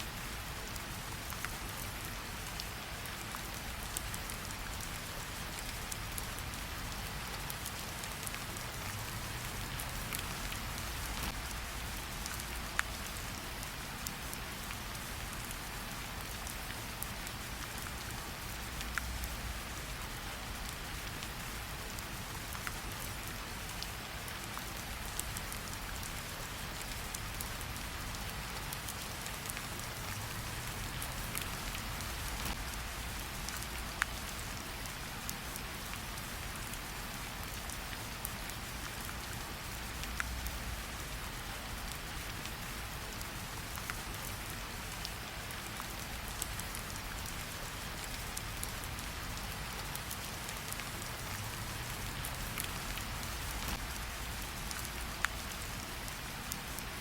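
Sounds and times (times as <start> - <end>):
steady rain: 0.0 - 57.0
crackling campfire: 0.1 - 57.0.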